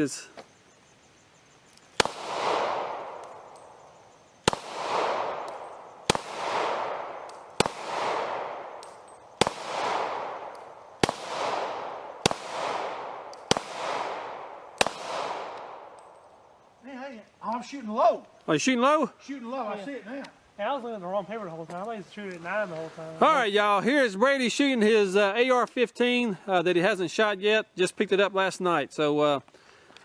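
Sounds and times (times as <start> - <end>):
handgun shots echoing: 2.0 - 3.8, 4.5 - 16.2.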